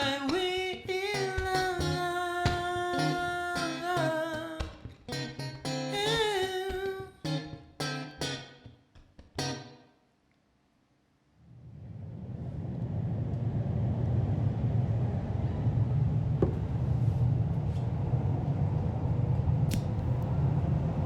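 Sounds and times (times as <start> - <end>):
person singing: 0.0 - 8.4
plucked guitar chords: 0.0 - 10.0.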